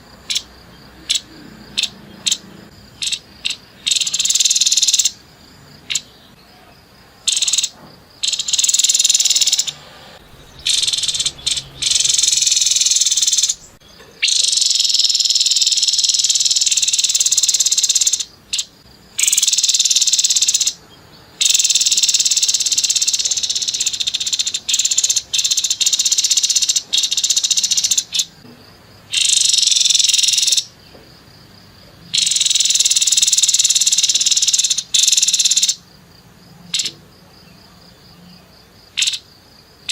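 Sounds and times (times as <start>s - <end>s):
bird buzzing rattle calls: 8.3s - 13.8s.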